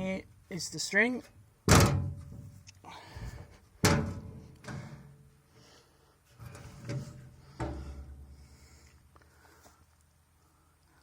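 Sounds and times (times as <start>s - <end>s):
sheet-metal cover clunking: 1.7s - 2.5s, 3.8s - 5.2s.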